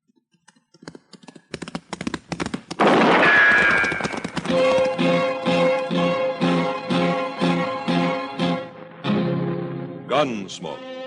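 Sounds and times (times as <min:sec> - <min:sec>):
hoofbeats: 0:00.4 - 0:06.1
gunfire: 0:02.8 - 0:04.8
theme music with plucked strings: 0:04.5 - 0:11.0.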